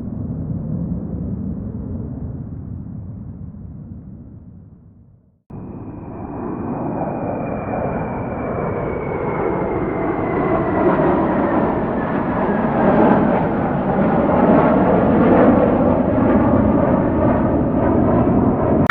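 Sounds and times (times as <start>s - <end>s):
airplane engines running: 5.5s - 18.9s.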